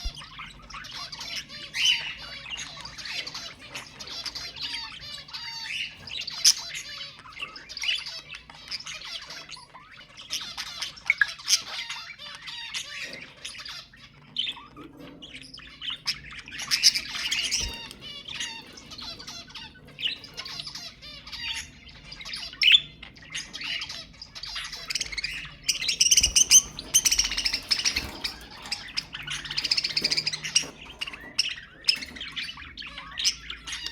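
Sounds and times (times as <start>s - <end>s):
budgerigars chattering and chirping: 0.0s - 33.9s.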